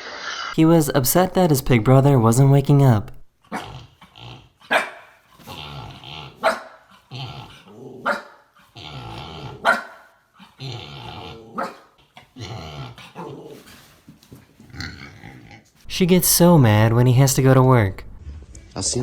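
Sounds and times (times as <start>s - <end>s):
puppy growling: 3.4s - 14.0s, 14.6s - 15.9s
puppy yapping: 4.6s - 5.5s, 6.4s - 6.8s, 7.4s - 8.4s, 9.4s - 11.9s.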